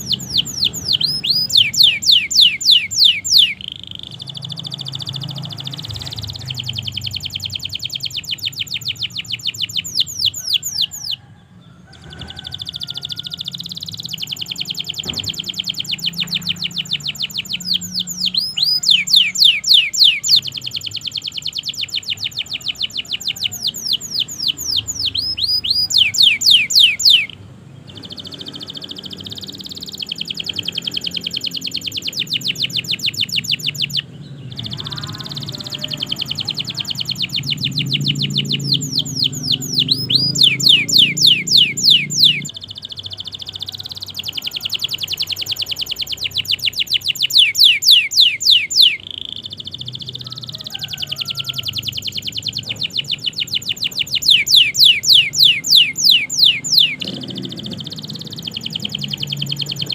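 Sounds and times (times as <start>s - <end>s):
canary singing: 0.0s - 59.9s.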